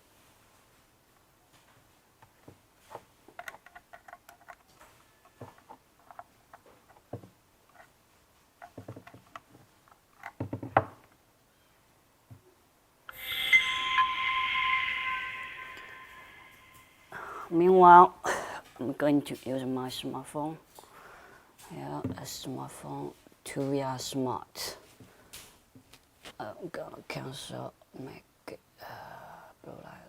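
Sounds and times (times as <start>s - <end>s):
loud electronic tone: 13.1s - 17.3s.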